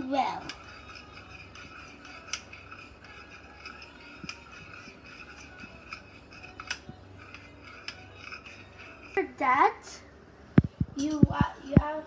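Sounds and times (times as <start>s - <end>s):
spoon stirring thick mixture: 0.0s - 9.6s.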